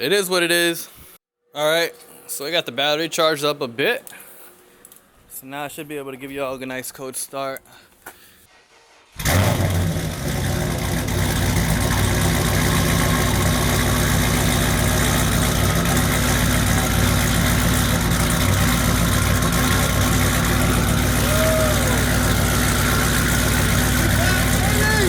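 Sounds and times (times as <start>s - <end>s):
car engine idling loud: 9.2s - 25.0s.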